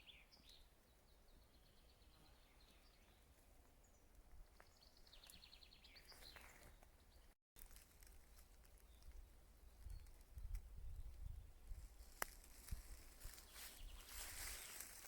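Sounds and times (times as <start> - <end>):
wind rumble on microphone: 9.0 - 14.6.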